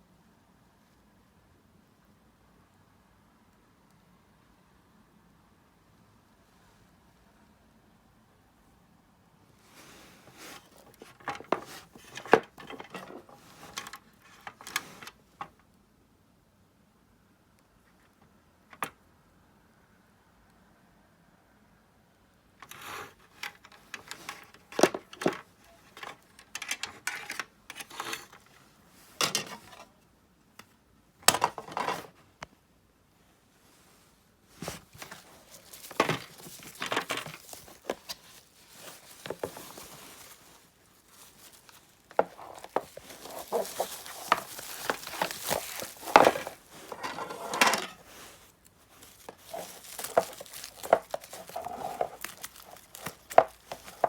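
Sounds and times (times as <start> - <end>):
small hard objects clicking and knocking: 35.0 - 48.0, 48.9 - 54.0.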